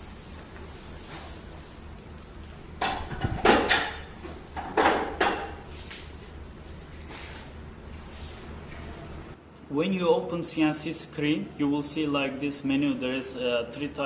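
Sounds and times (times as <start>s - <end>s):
metal clanks and clatter: 2.8s - 5.6s.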